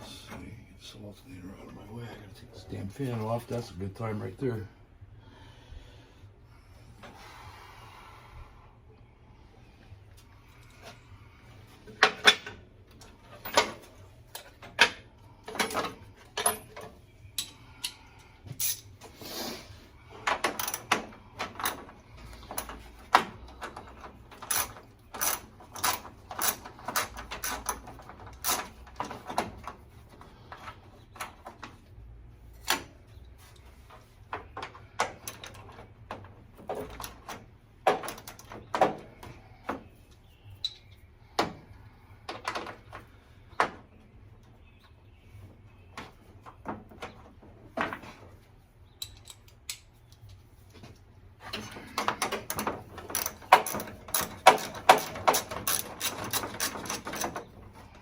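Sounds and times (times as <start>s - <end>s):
hand tools clicking and clanking on metal: 10.2s - 19.2s, 20.0s - 43.9s, 46.0s - 58.0s.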